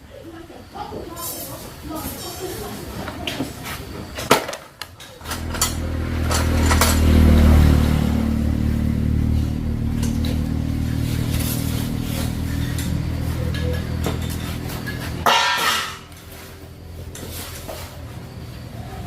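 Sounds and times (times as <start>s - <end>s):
motorcycle engine revving: 5.2s - 19.0s.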